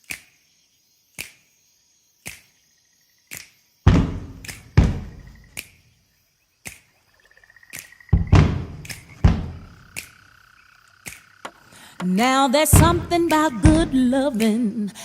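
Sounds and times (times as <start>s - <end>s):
deep bass hits: 3.9s - 5.4s, 8.2s - 9.8s
sharp percussive hits: 3.9s - 5.7s, 8.2s - 10.1s.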